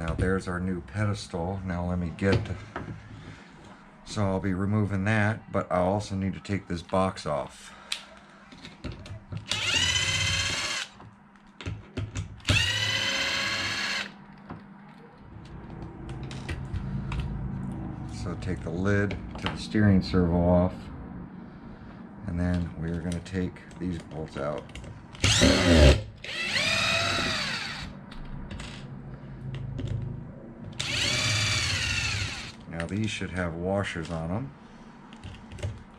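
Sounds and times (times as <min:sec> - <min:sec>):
power driver whining: 0:09.4 - 0:10.9, 0:12.4 - 0:14.1, 0:25.2 - 0:28.0, 0:30.7 - 0:32.6.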